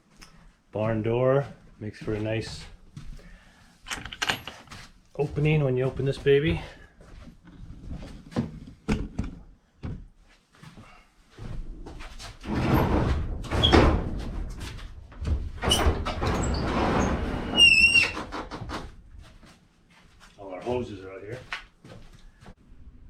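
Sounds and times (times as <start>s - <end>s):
sliding door rumbling on track: 12.4s - 18.9s.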